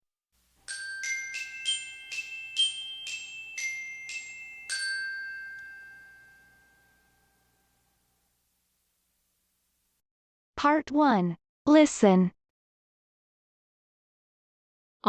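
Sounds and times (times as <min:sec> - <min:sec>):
bell-like jingle melody: 0:00.6 - 0:08.1.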